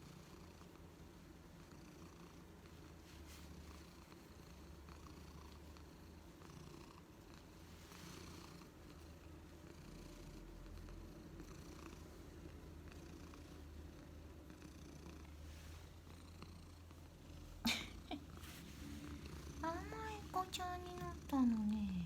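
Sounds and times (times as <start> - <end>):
cat purring: 0.0 - 22.0.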